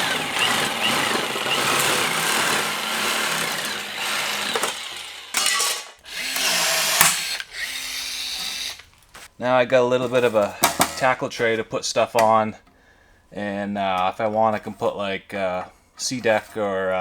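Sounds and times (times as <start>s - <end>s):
power tool cutting aluminum: 0.0s - 8.9s, 10.6s - 11.2s.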